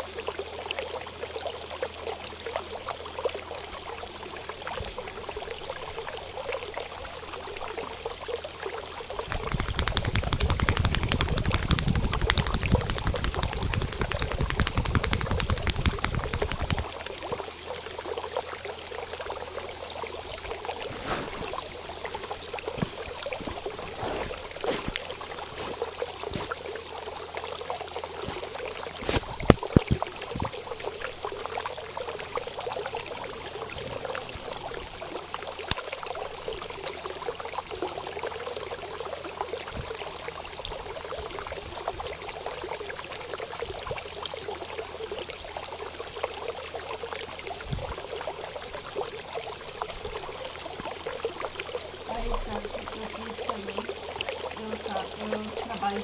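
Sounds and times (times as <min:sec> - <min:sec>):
running water trickling: 0:00.9 - 0:38.3
sharp clicks and knocks: 0:09.3 - 0:16.9, 0:29.0 - 0:30.6.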